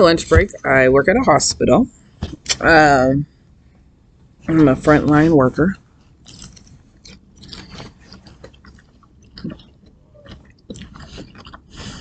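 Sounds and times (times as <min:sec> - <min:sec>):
chewing crunchy salad: 0:06.2 - 0:12.0.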